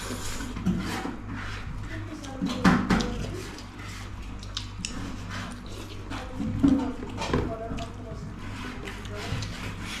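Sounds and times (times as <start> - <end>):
person chewing: 3.0 - 8.0.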